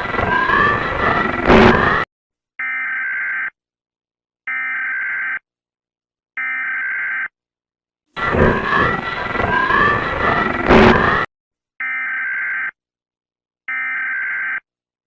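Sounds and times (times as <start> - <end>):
noisy gliding tones: 0.0 - 2.0, 8.2 - 11.3.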